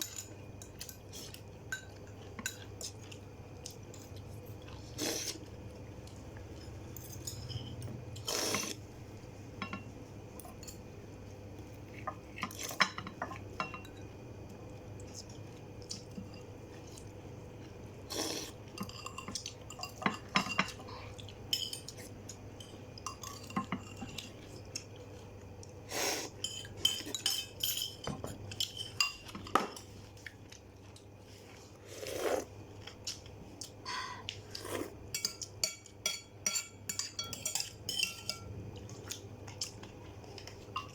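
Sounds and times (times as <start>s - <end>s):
cutlery clinking against dishes: 0.0s - 2.9s, 12.1s - 14.1s, 18.8s - 20.9s, 22.6s - 24.3s, 26.4s - 29.9s, 35.1s - 38.5s, 40.4s - 40.9s.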